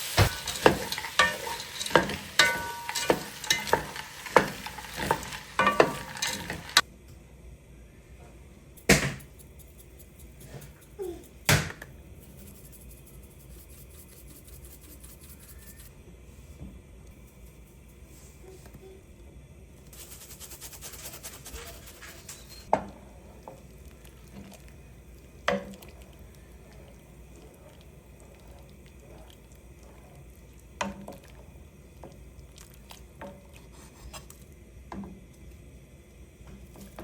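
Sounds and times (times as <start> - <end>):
pots and dishes clinking: 0.0 - 6.8, 25.4 - 26.8.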